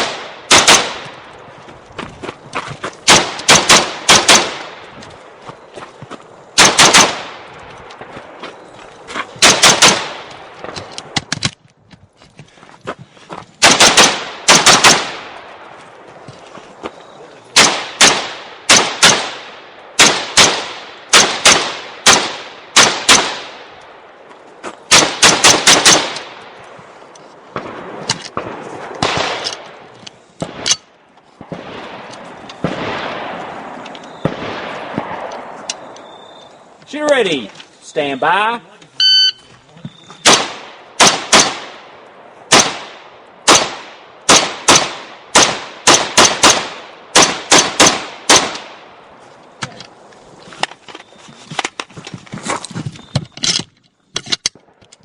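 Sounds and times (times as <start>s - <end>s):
rifle shots: 0.0s - 1.3s, 3.0s - 4.9s, 6.6s - 8.1s, 9.4s - 11.2s, 13.6s - 15.6s, 17.5s - 23.8s, 24.9s - 26.6s, 27.5s - 35.9s, 40.2s - 49.0s
faint distant gunshots: 3.0s - 4.8s, 31.4s - 35.9s, 40.2s - 49.0s.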